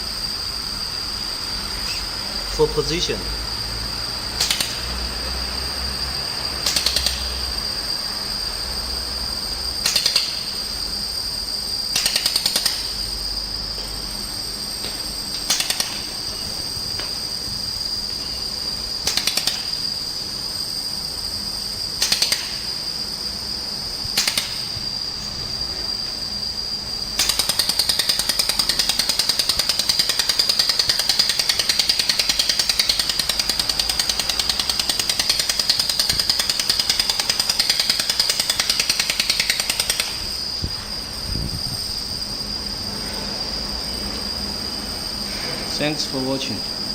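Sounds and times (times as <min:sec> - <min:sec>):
rapid pulsing welding buzz: 0:00.0 - 0:40.6
steady high whine: 0:00.0 - 0:46.9.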